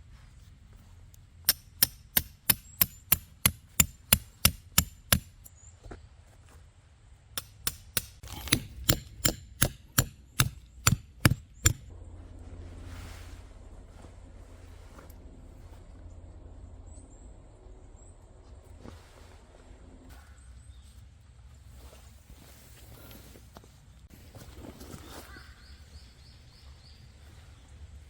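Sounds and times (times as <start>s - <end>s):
rapid hammer blows with metallic ring: 1.5s - 5.5s, 7.4s - 11.9s.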